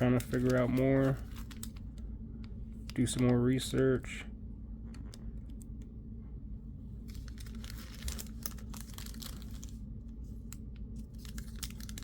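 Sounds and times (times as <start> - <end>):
foil wrapper crinkling: 0.0 - 1.9, 7.1 - 9.8, 10.5 - 12.0
foil tearing: 7.1 - 9.7, 11.1 - 12.0.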